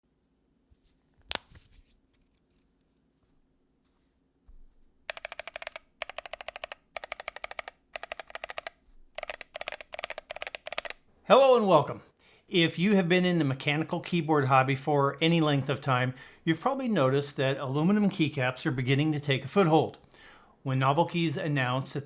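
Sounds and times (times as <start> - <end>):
mechanical keyboard typing: 5.1 - 11.0.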